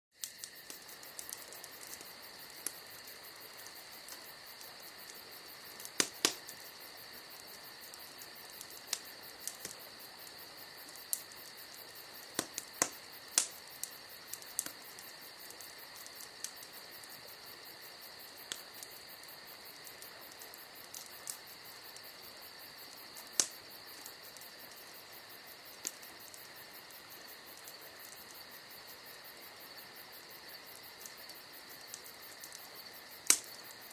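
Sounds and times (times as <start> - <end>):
fire popping sharply: 0.2 - 17.1, 33.2 - 33.8
campfire logs crackling: 0.2 - 33.9
crickets chirring: 0.2 - 33.9.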